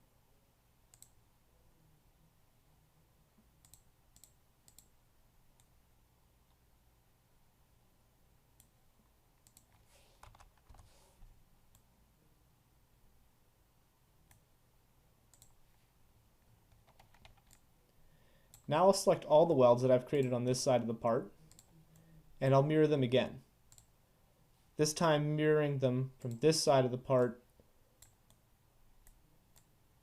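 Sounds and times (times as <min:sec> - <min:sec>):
low room hum: 0:00.0 - 0:30.0
computer mouse clicks: 0:00.9 - 0:01.2, 0:03.6 - 0:04.9, 0:09.4 - 0:11.9, 0:15.3 - 0:15.6, 0:16.7 - 0:17.7, 0:21.5 - 0:22.1, 0:23.7 - 0:23.9, 0:28.0 - 0:28.4, 0:29.0 - 0:29.7.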